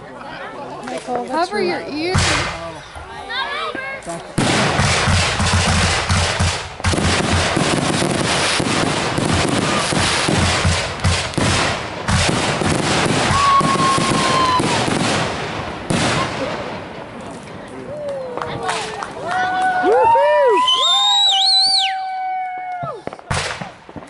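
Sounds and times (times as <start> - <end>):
fireworks bangs and crackling: 0.8 - 3.1, 4.1 - 21.9, 22.6 - 24.0
firework whistle: 13.2 - 14.9, 20.5 - 23.6.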